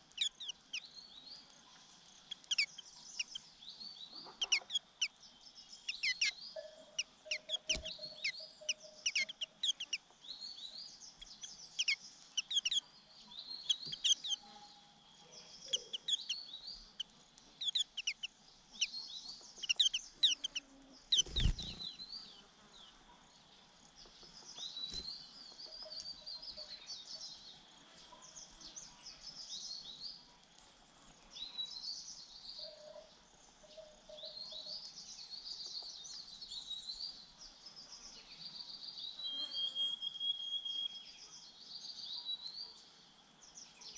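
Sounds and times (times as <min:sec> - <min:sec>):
chicks begging chirps: 0:02.3 - 0:03.4, 0:04.1 - 0:05.1, 0:05.8 - 0:10.0, 0:11.1 - 0:14.6, 0:15.3 - 0:22.0.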